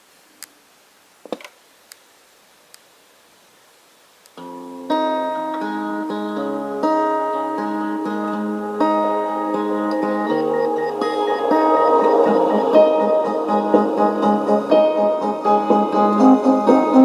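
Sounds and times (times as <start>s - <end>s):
clock radio alarm melody: 9.7s - 15.2s.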